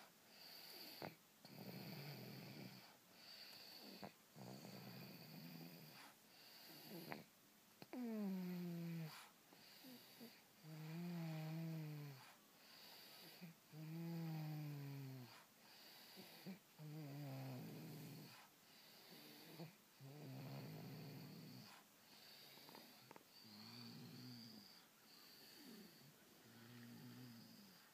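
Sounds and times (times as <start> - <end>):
faint slow snoring: 0.0 - 27.9.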